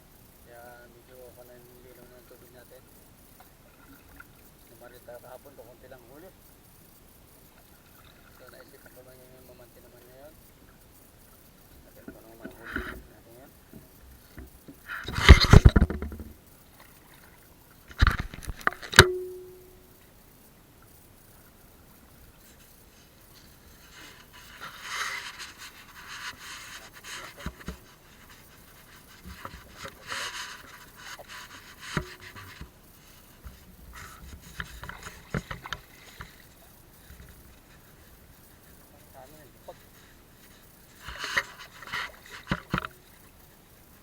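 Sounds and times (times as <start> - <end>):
water splashing and sloshing: 3.3 - 4.8, 11.4 - 20.2, 20.8 - 44.0.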